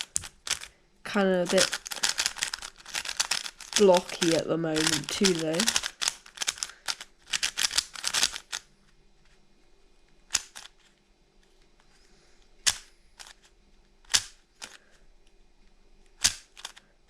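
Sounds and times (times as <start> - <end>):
plastic cube turning clicks: 1.5 - 8.7, 10.3 - 10.8, 12.6 - 13.4, 14.1 - 14.8, 16.1 - 16.8.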